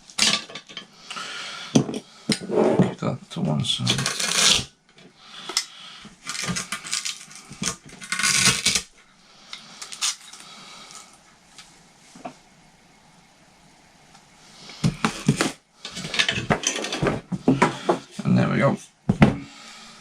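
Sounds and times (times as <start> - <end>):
velcro being pulled apart: 4.0 - 4.7, 6.3 - 8.9.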